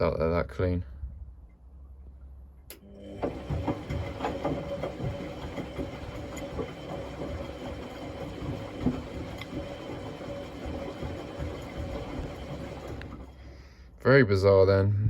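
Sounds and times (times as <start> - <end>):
washing machine motor hum: 2.7 - 13.8
drum clicking and knocking: 3.2 - 13.2.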